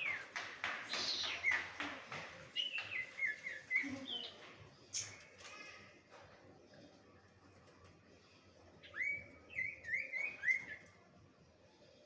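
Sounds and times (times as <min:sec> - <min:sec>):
songbird chirping and whistling: 0:08.8 - 0:10.8.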